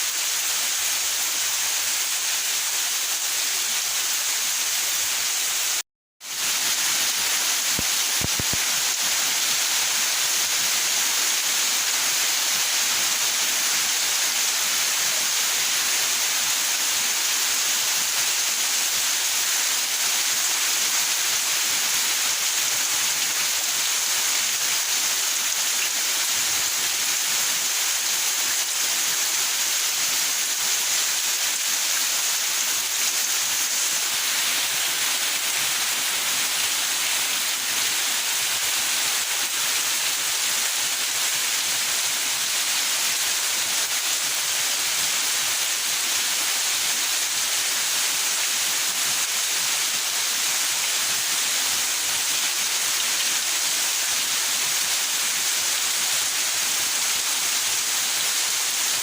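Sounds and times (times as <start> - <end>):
heavy rain falling: 0.0 - 59.0.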